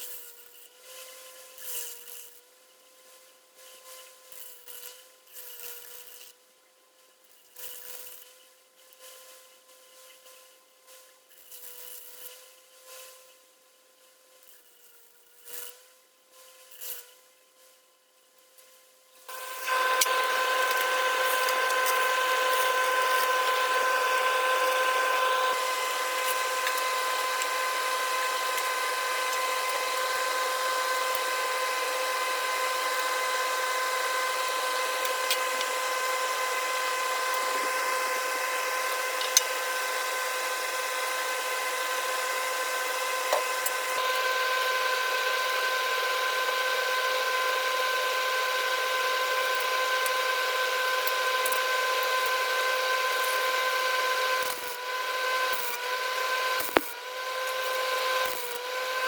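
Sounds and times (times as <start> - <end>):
electric power tool whine: 19.3 - 59.0.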